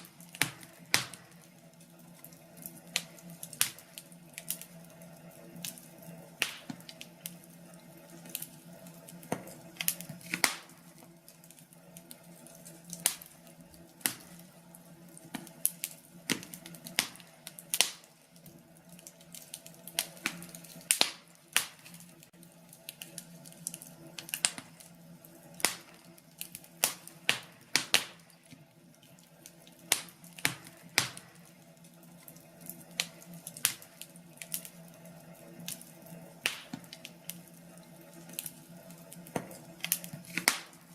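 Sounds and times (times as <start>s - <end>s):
faint steady hum: 0.0s - 40.9s
fireplace fire crackling and popping: 0.0s - 40.9s.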